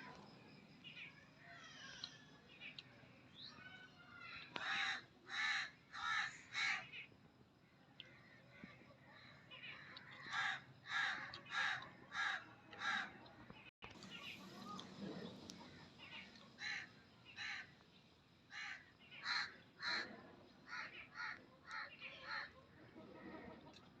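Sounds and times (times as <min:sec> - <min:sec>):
crows cawing: 0:04.3 - 0:06.9, 0:09.8 - 0:13.2, 0:16.6 - 0:17.7, 0:18.5 - 0:20.1, 0:20.7 - 0:22.5.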